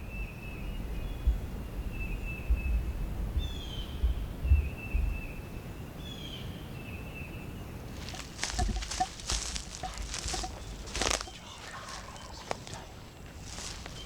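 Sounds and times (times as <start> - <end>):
songbirds singing: 0.0 - 14.0
low rumbling bumps: 7.9 - 11.5.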